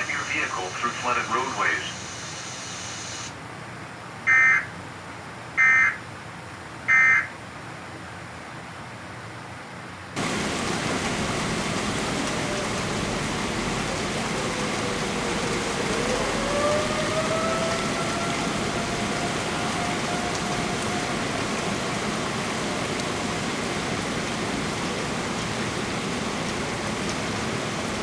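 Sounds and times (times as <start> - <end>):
digital data bursts: 0.0 - 3.3
distant tornado siren: 0.0 - 3.3, 10.2 - 28.0
heavy rain: 0.0 - 3.4, 10.2 - 28.0.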